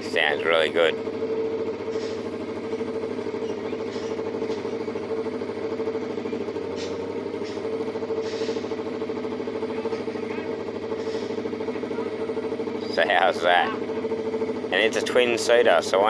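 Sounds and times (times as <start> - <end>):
motorcycle engine running steadily: 0.0 - 16.0.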